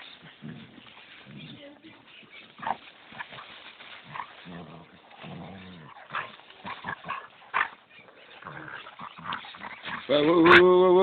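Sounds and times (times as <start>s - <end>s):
dogs growling: 0.0s - 1.8s, 4.0s - 11.0s
dogs snapping and yelping: 5.9s - 10.7s.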